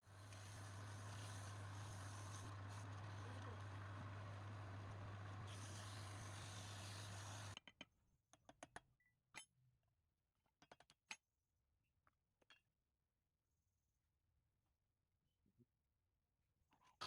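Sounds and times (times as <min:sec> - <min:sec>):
machine hum with hiss: 0:00.1 - 0:07.6.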